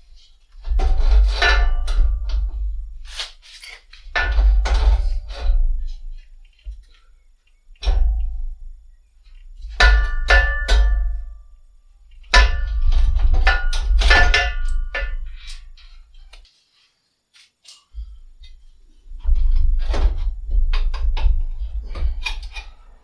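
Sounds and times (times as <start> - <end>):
metal clanking: 0.0 - 7.0, 7.8 - 11.5, 12.1 - 16.4.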